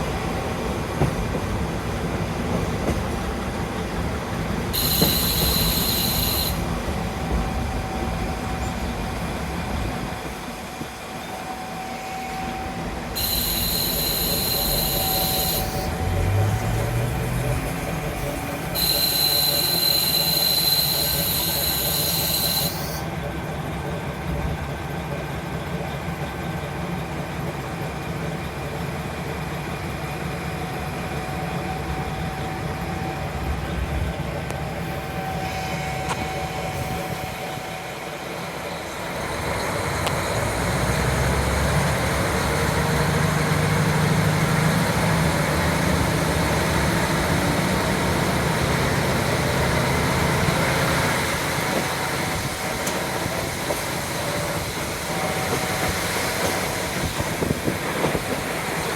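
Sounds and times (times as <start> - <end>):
high whistling hiss: 4.8 - 6.6, 13.2 - 15.9, 18.8 - 23.0
diesel engine drone: 12.7 - 29.5, 30.3 - 53.6.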